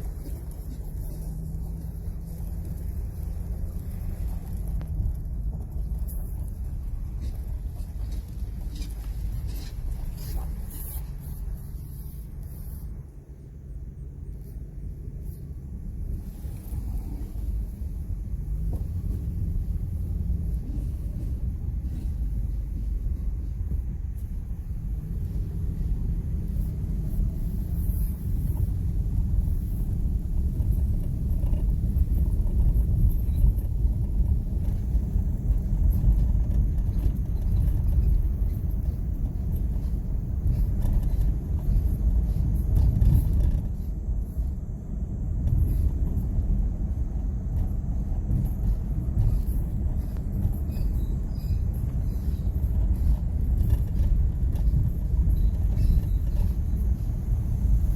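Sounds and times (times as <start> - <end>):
truck engine running: 0.0 - 57.9.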